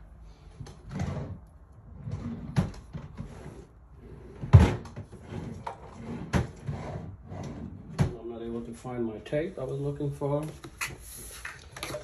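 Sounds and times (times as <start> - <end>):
knocks and clatters in cupboards: 2.1 - 3.4, 4.4 - 8.2.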